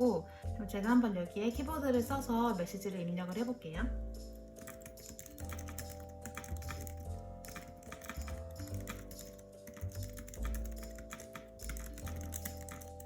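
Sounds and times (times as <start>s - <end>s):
keyboard keys clacking: 4.3s - 13.0s.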